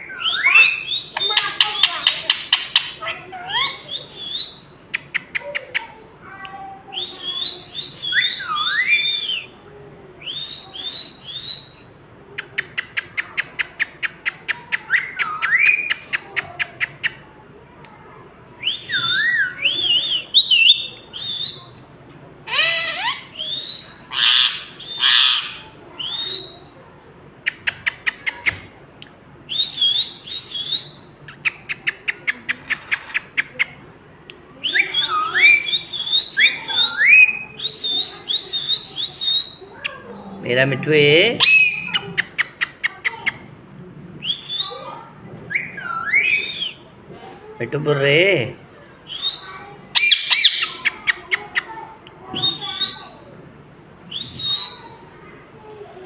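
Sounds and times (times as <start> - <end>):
parakeet whistling calls: 0.0 - 2.1, 6.9 - 9.5, 14.9 - 16.0, 18.6 - 21.6, 22.5 - 26.7, 29.5 - 31.1, 34.6 - 39.8, 41.4 - 42.2, 44.2 - 44.9, 45.5 - 46.8, 50.0 - 50.9
parakeet rapid clicks: 1.2 - 3.0
parakeet harsh squawks: 22.4 - 26.6, 41.4 - 42.1, 50.0 - 50.8.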